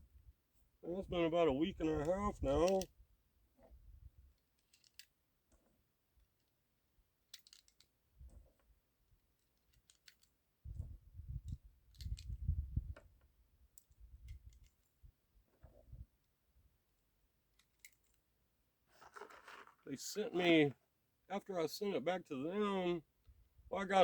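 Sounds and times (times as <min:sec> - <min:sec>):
small metallic clicks: 0:04.4 - 0:06.6, 0:07.3 - 0:08.6, 0:09.4 - 0:10.4, 0:11.5 - 0:12.4, 0:13.7 - 0:14.9, 0:17.5 - 0:18.2.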